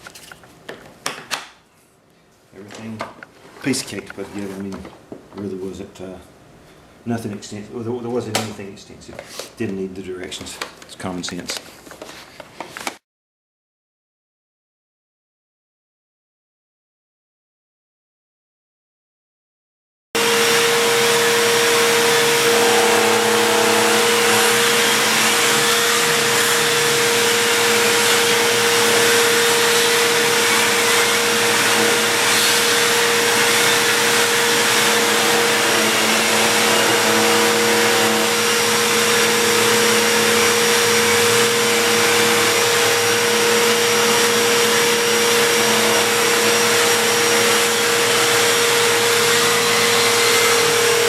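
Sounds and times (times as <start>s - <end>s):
vacuum cleaner running: 20.2s - 51.0s.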